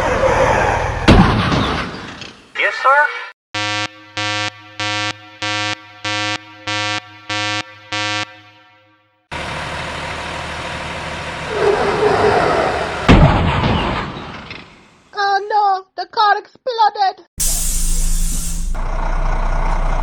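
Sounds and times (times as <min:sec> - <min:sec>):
loud crash: 0:01.0 - 0:02.2, 0:13.0 - 0:14.9, 0:17.4 - 0:18.8
electronic beeps: 0:03.6 - 0:08.7.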